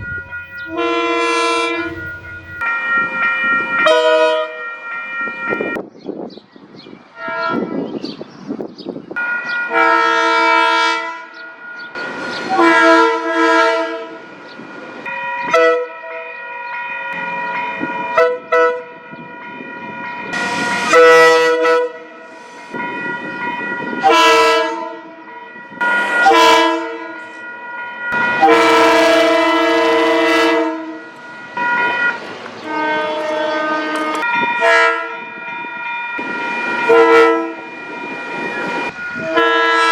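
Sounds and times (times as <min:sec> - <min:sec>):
train horn blasts: 0:00.0 - 0:02.8, 0:03.8 - 0:04.7, 0:07.2 - 0:08.0, 0:09.6 - 0:11.4, 0:12.3 - 0:14.3, 0:15.4 - 0:16.4, 0:18.1 - 0:19.0, 0:20.4 - 0:22.8, 0:23.9 - 0:25.2, 0:25.8 - 0:27.4, 0:28.2 - 0:35.3, 0:36.6 - 0:39.9
train rail noise: 0:00.0 - 0:39.9.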